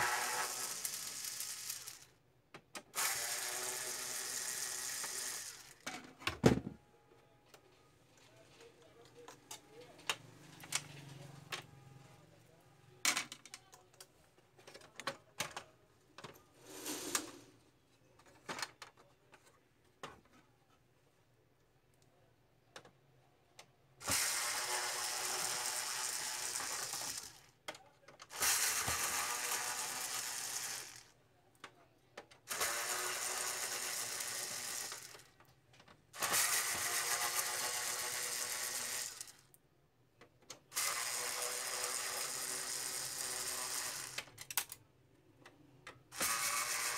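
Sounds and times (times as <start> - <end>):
clicks and knocks of parts handled: 13.0 - 16.5, 44.2 - 44.8
printer motor whirring: 24.0 - 27.3, 32.5 - 35.1, 40.8 - 44.3, 46.2 - 46.9.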